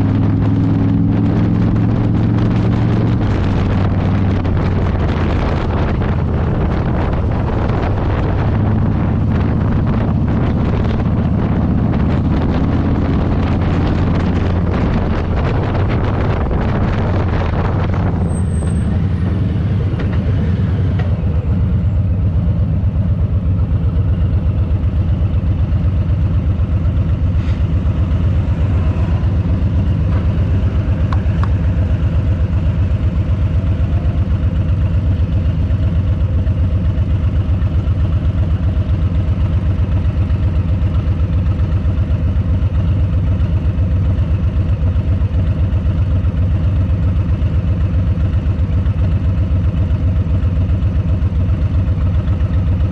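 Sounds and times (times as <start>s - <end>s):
motorcycle engine idling: 18.8s - 52.9s.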